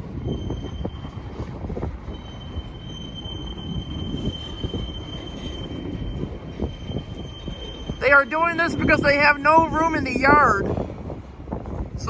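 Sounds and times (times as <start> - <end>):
freight train rumbling past: 0.0 - 12.0
train cars clanking: 0.0 - 12.0
high metal squeal: 0.1 - 1.4, 2.1 - 8.1.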